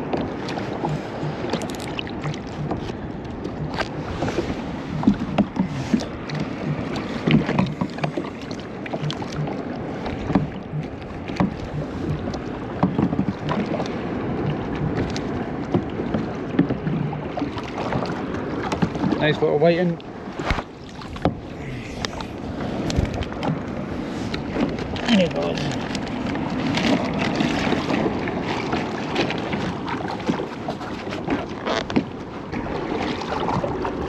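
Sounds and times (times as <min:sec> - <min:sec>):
water lapping against hull: 0:00.0 - 0:34.0
small knocks and clicks: 0:01.5 - 0:02.0.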